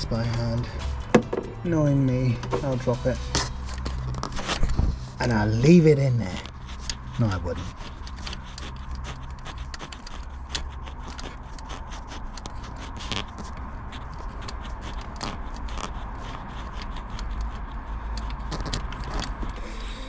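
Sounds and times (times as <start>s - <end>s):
metal scraping: 0.1s - 4.6s.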